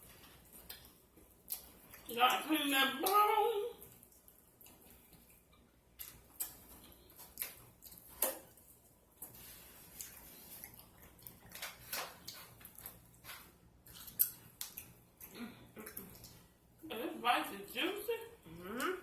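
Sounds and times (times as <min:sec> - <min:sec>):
wet mouth eating sounds: 0:00.4 - 0:02.4, 0:03.8 - 0:16.7
chewing clicks: 0:00.6 - 0:02.1, 0:03.8 - 0:08.6.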